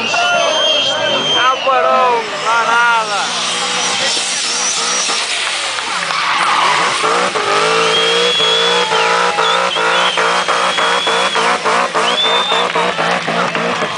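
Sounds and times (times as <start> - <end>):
car engine revving: 0.0 - 13.9.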